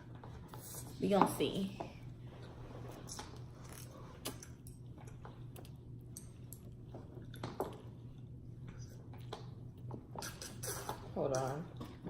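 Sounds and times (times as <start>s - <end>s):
low steady hum: 0.0s - 12.0s
people chewing noodles: 2.5s - 12.0s.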